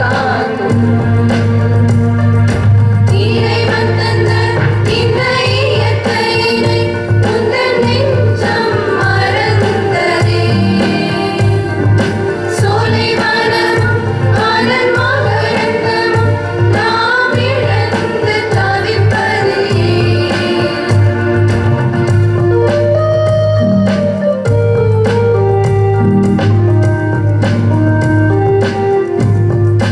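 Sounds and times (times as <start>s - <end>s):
group of singers: 0.0s - 29.9s
instrumental accompaniment with bass: 0.0s - 29.9s.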